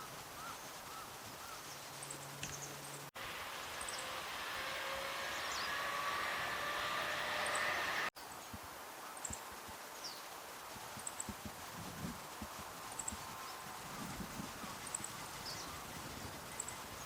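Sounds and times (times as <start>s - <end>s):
distant hum: 3.2s - 8.1s.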